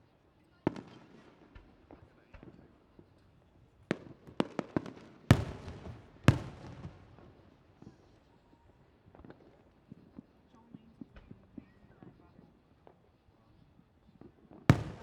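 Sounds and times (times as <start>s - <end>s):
firework booms with rumbling echo: 5.3s - 7.2s, 14.7s - 15.0s
firework cracks: 14.7s - 15.0s.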